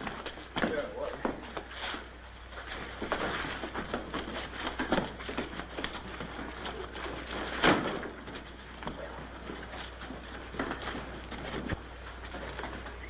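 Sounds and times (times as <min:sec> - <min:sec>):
scuffles and knocks: 0:00.0 - 0:13.0.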